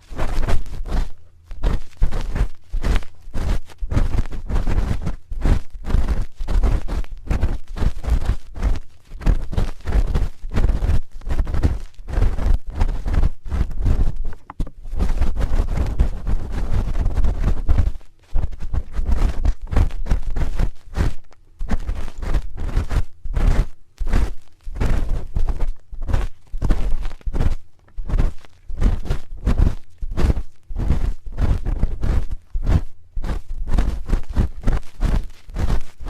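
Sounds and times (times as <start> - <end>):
spoon scraping a microphone: 0.0 - 32.6.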